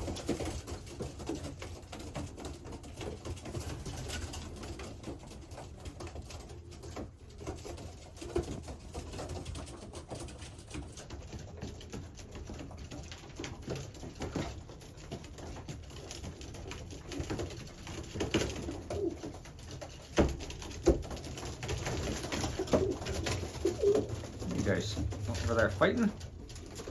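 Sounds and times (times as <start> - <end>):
pigeons cooing: 10.7 - 26.9.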